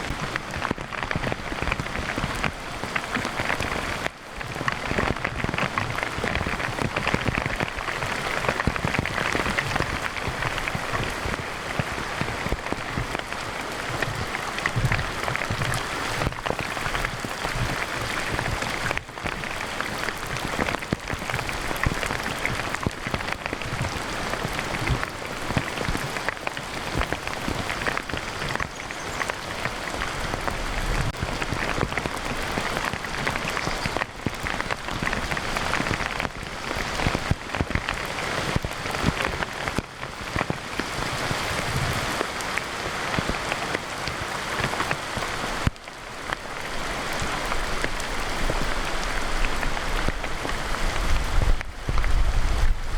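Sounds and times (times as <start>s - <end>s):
heavy rain pouring: 0.0s - 52.9s
wind buffeting microphone: 46.4s - 52.9s.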